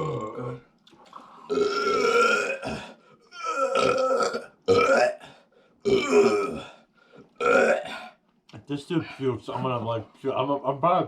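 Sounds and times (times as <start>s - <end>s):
man burping loudly: 0.0s - 0.7s, 1.5s - 6.8s, 7.4s - 8.2s.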